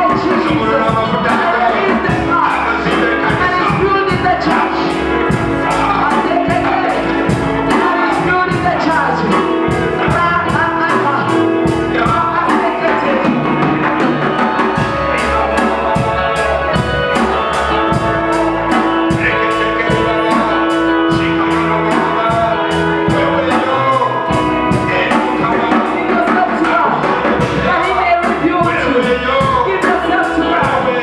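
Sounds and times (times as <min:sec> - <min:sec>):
drums: 0:00.0 - 0:31.0
people singing: 0:00.0 - 0:31.0
sustained keyboard chords: 0:00.0 - 0:31.0.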